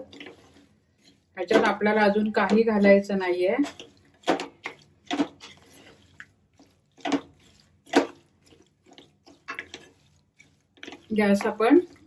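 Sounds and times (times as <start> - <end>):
spatula scraping wet paste: 0.0 - 12.0.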